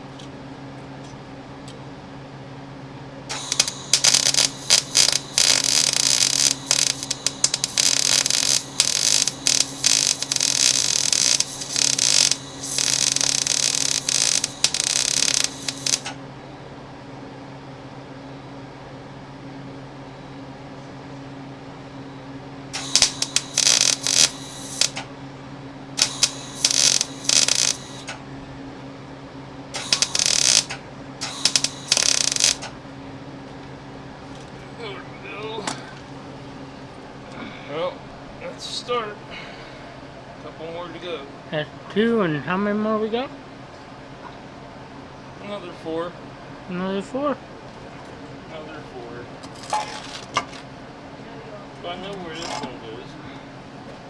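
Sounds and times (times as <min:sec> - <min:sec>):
steady low hum: 0:00.0 - 0:50.0
welder arc crackling: 0:03.3 - 0:16.2, 0:22.7 - 0:25.1, 0:25.9 - 0:28.2, 0:29.7 - 0:32.8.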